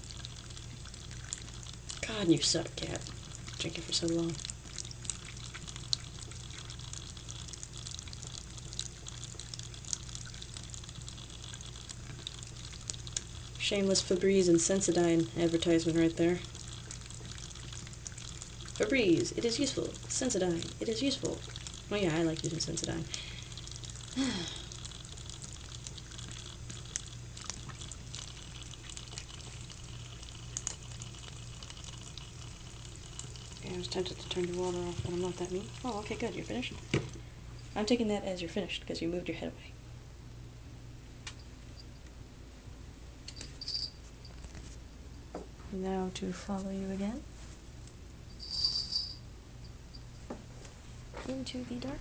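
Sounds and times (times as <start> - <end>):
cat lapping water: 0.0 - 37.4
small wet ticks: 0.0 - 37.7
tap running in thin stream: 0.0 - 38.0.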